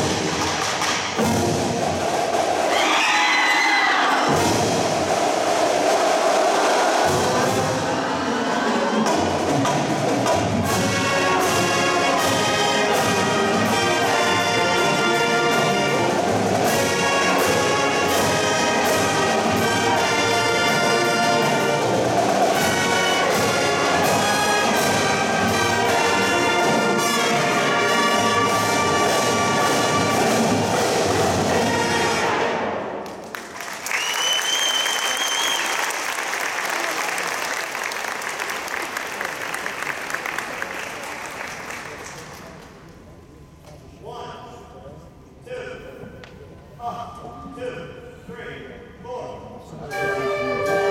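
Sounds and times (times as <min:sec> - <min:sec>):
brass instruments: 0:00.0 - 0:33.2, 0:49.8 - 0:50.9
marching band playing: 0:00.0 - 0:33.2, 0:49.8 - 0:50.9.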